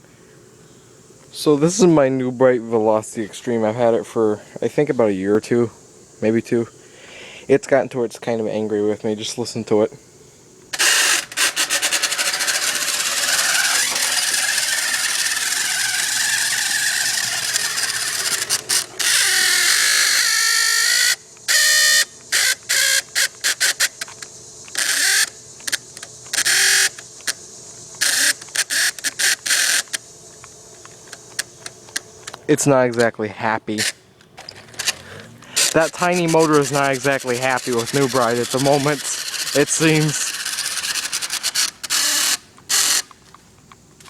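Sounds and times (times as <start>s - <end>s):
toy car motor whining grind: 10.7s - 30.0s, 33.8s - 43.2s.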